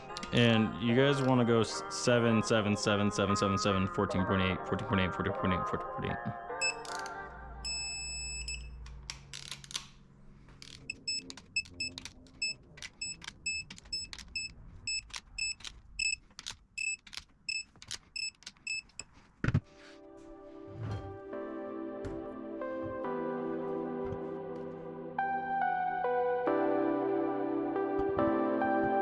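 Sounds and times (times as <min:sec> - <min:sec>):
torque wrench beeping: 0:10.8 - 0:16.2, 0:16.8 - 0:19.1.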